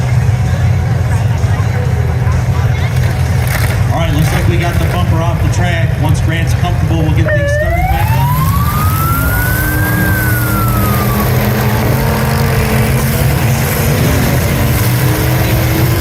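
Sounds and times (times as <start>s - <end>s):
car engines rumbling: 0.0s - 16.0s
siren wailing: 7.2s - 13.9s.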